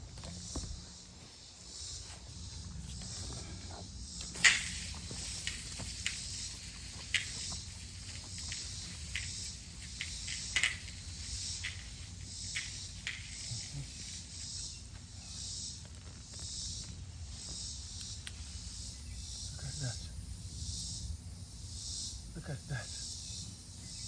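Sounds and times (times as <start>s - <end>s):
steady high hiss: 0.0s - 24.0s.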